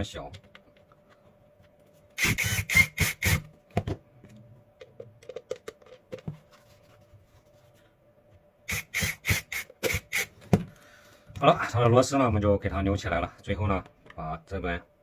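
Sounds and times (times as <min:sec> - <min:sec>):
screwdriver driving screws: 0:02.2 - 0:03.5, 0:08.7 - 0:10.3.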